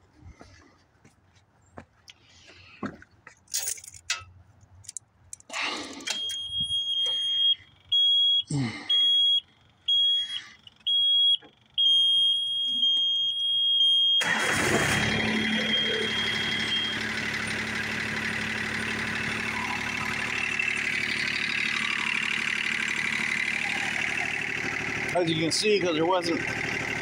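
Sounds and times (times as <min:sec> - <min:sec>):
diesel engine cranking and running: 0:03.4 - 0:08.7, 0:09.3 - 0:27.0
pulsing warning buzzer: 0:06.0 - 0:25.2.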